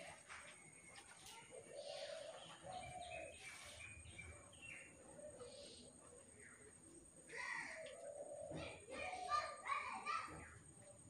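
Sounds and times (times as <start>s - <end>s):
bird chirps and calls: 0.9s - 6.7s.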